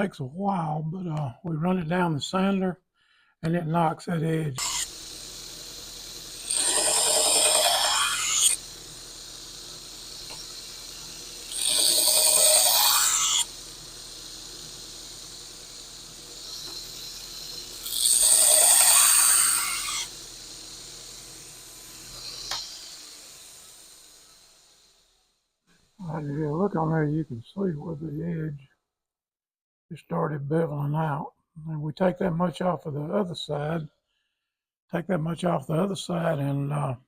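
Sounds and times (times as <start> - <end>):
knife grinding on belt sander: 4.6 - 25.1
sander motor hum: 4.6 - 25.2.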